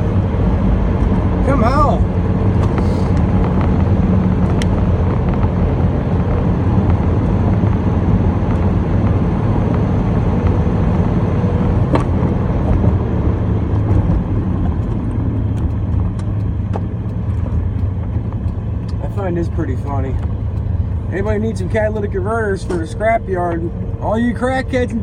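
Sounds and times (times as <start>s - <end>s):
car engine and road rumble: 0.0s - 25.0s.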